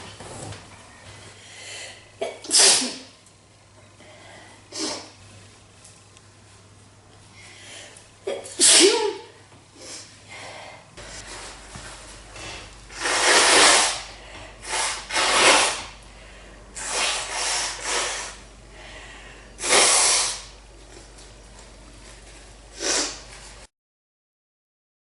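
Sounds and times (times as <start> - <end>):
girl blowing her nose: 12.9 - 16.0, 16.8 - 18.4, 19.6 - 20.5, 22.8 - 23.3.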